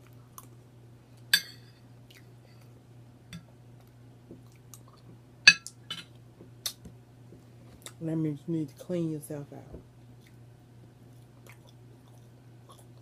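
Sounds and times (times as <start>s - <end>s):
steady low hum: 0.0s - 13.0s
utensil clinking against a dish: 5.5s - 6.1s.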